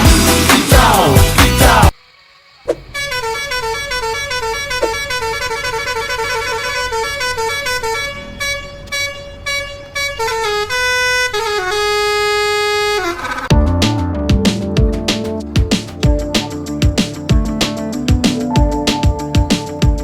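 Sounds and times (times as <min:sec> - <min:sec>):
loud pop music: 0:00.0 - 0:02.0, 0:13.5 - 0:20.0
multi-tone musical bus horn: 0:02.9 - 0:13.6.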